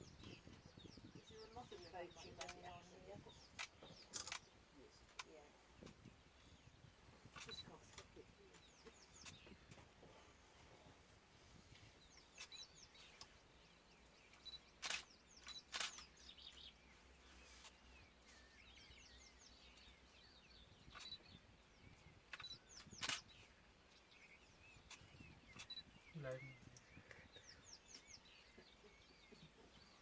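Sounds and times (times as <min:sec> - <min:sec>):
faint birdsong: 0:00.0 - 0:30.0
sharp clicks: 0:01.7 - 0:02.7, 0:03.5 - 0:06.0, 0:14.3 - 0:16.2, 0:22.3 - 0:23.4.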